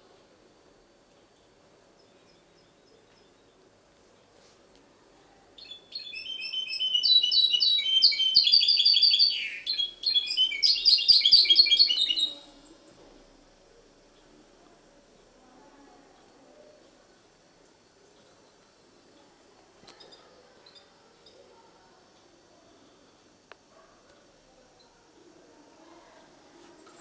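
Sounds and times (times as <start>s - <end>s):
bird twittering trills: 5.6s - 12.5s.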